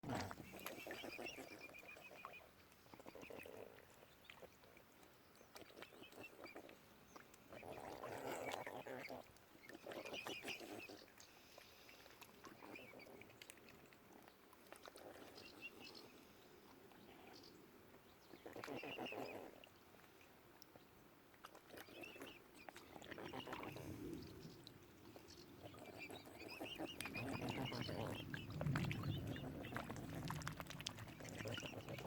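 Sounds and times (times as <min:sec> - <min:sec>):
swans calling low: 0:22.9 - 0:32.0.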